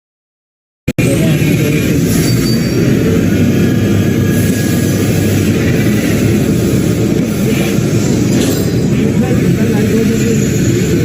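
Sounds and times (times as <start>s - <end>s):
lathe machinery rumbling: 1.0s - 11.0s.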